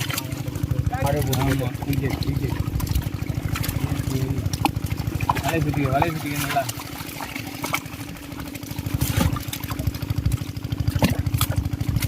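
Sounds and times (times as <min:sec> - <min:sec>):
small engine running: 0:00.0 - 0:12.0.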